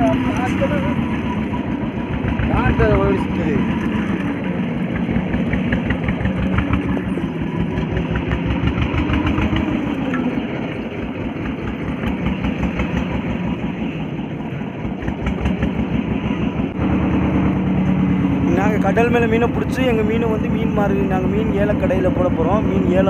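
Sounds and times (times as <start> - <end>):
outboard motor running: 0.0 - 23.0.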